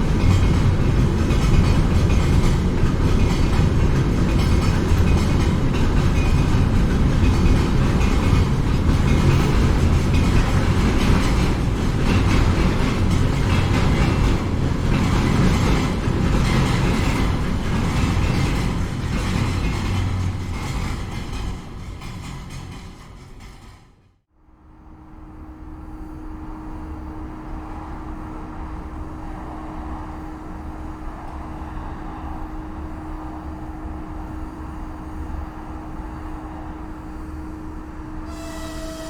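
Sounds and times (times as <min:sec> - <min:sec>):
train wheels clacking over rails: 0:00.0 - 0:24.2
train rumble: 0:00.0 - 0:39.0.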